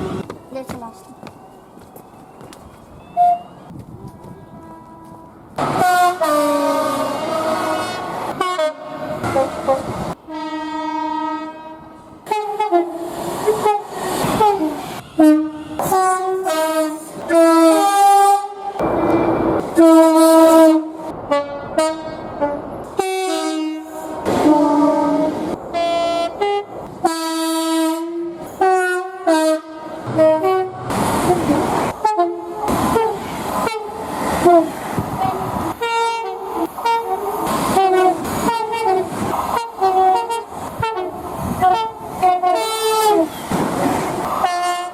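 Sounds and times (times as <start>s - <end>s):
train air horn blasts: 3.2s - 18.8s, 19.8s - 43.3s, 44.4s - 44.9s
rushing noise: 18.5s - 23.0s, 29.8s - 42.5s.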